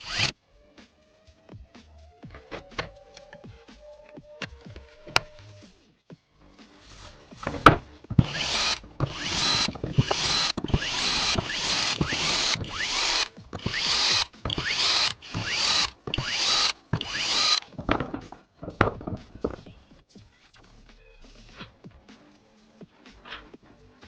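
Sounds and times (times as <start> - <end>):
electric screwdriver whirring: 0.0 - 0.3, 7.4 - 18.2.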